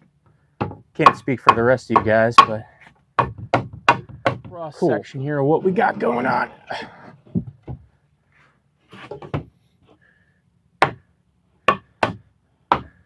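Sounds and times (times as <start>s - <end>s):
sharp wooden knocks: 0.6s - 2.6s, 3.2s - 4.6s, 11.7s - 13.0s.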